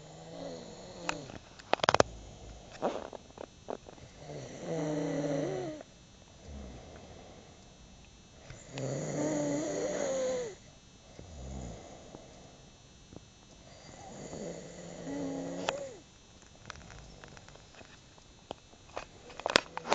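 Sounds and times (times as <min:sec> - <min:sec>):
person snoring: 0:00.0 - 0:07.6, 0:08.4 - 0:12.5, 0:13.7 - 0:16.0
quiet low breath: 0:00.0 - 0:12.8, 0:13.6 - 0:17.8.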